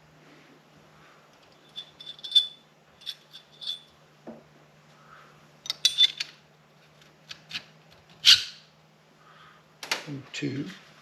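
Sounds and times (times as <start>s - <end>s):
small metal parts clinking: 1.4s - 3.9s, 5.6s - 6.4s.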